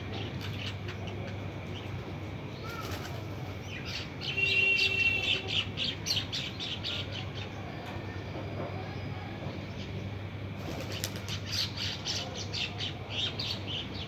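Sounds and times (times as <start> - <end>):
small birds chirping: 0.1 - 8.2.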